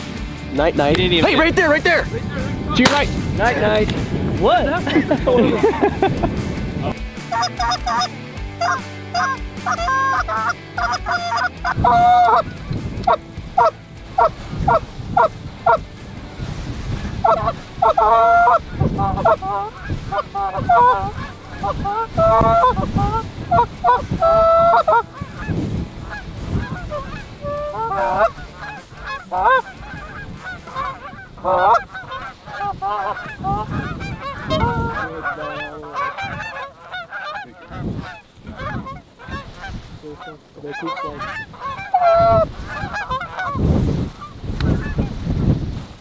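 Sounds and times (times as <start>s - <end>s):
wind rumbling on microphone: 0.0s - 8.2s, 9.6s - 46.0s
goose honks and clucks: 7.3s - 15.8s, 16.9s - 43.6s, 44.2s - 45.1s.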